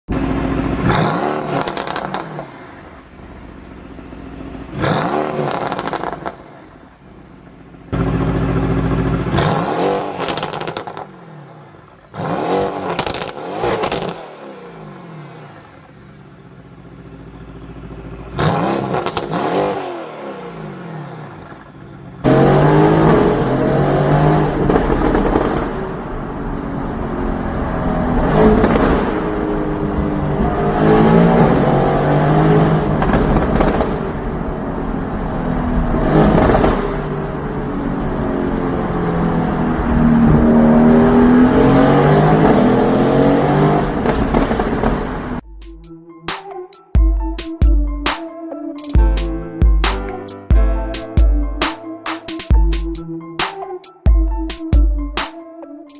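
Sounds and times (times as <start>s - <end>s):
car engine revving: 0.1s - 46.0s
exhaust pops and crackles: 0.2s - 2.3s, 10.2s - 11.1s, 12.9s - 14.2s, 24.6s - 25.8s, 28.5s - 29.2s, 33.0s - 34.2s, 36.2s - 37.0s, 43.9s - 45.4s.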